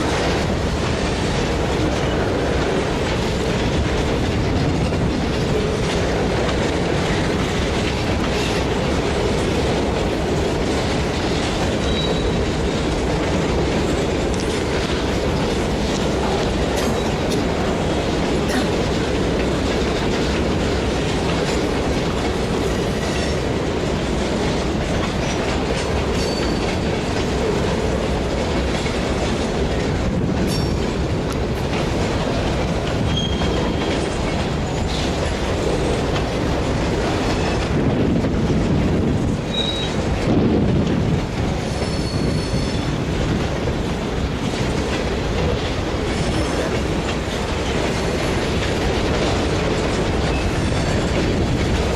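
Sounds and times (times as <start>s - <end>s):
train rumbling: 0.0s - 51.9s.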